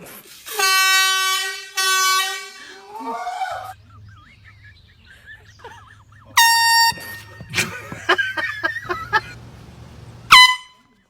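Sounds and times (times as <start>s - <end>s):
short sharp noises: 6.2s - 10.6s
air horn blare: 6.3s - 10.8s.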